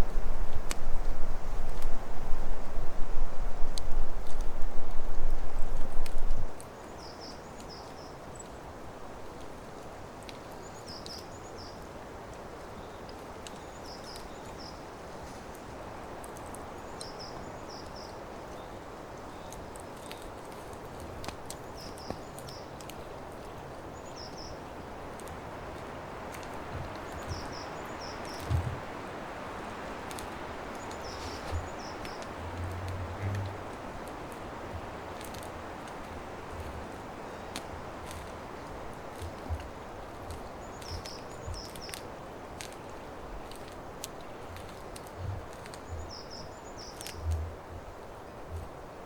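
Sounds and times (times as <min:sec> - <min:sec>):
forest rustling: 0:00.0 - 0:49.0
small bird calling: 0:29.6 - 0:35.4
loud low rumble: 0:32.4 - 0:33.8.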